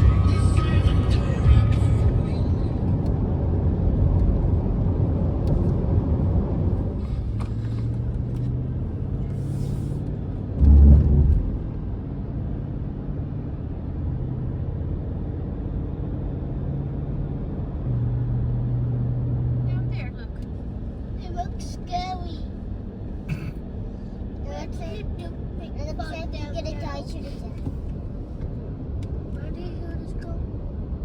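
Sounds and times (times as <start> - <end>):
truck engine and road noise: 0.0 - 31.0
loud low thump: 10.6 - 11.7.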